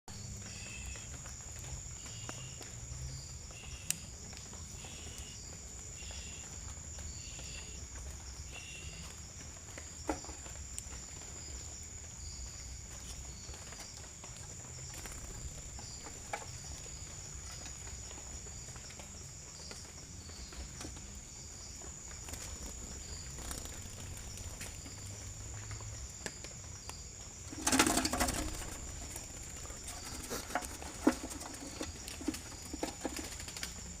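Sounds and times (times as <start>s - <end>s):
dove wings beating: 27.5s - 34.0s.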